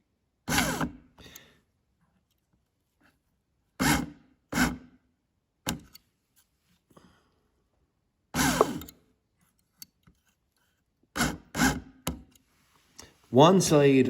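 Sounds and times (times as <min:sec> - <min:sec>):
electric motor running in bursts: 0:08.4 - 0:08.8.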